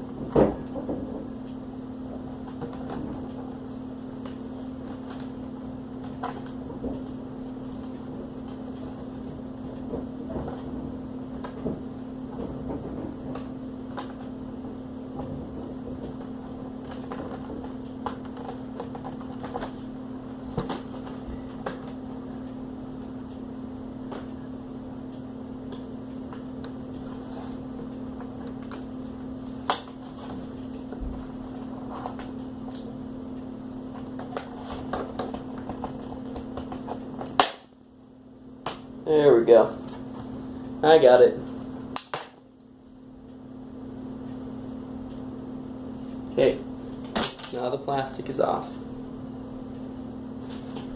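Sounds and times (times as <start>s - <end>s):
steady low hum: 0.0s - 50.9s
plastic snapping: 41.9s - 42.4s.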